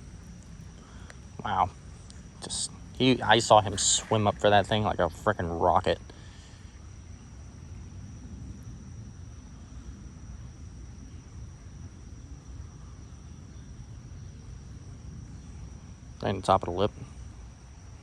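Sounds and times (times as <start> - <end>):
low even rumble: 0.0 - 6.3
high-pitched insect trill: 0.0 - 18.0.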